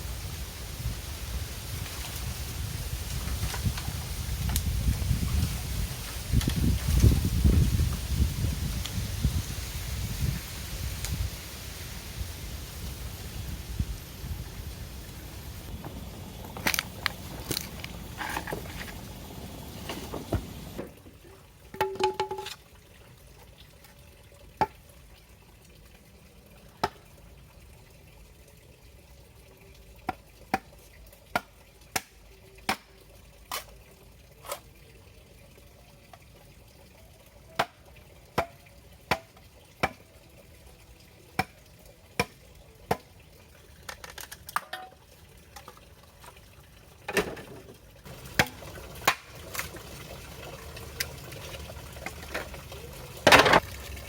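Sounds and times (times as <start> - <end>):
faint steady hiss: 0.0 - 22.6.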